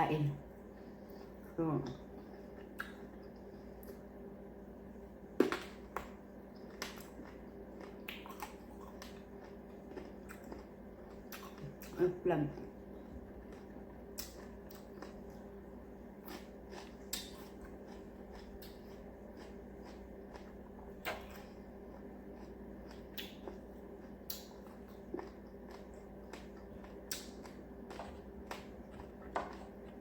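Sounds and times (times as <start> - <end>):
steady low hum: 0.0 - 30.0
chewing and food handling: 4.8 - 30.0.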